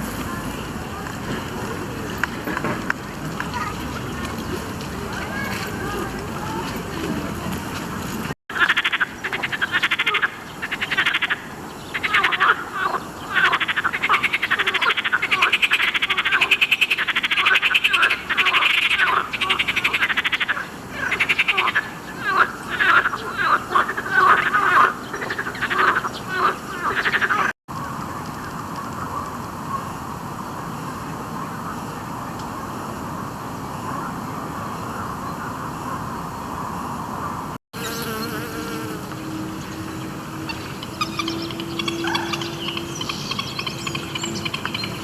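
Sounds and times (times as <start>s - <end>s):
frogs trilling: 8.5s - 27.5s, 40.4s - 45.0s.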